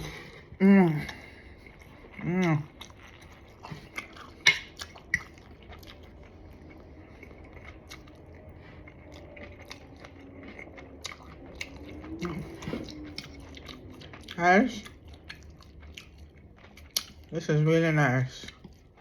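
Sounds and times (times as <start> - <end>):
chewing and mouth sounds: 0.0 - 19.0.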